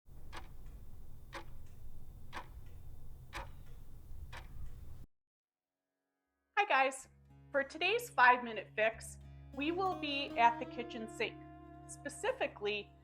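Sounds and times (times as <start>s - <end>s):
clock ticking: 0.0s - 5.1s
low steady hum: 0.1s - 5.0s.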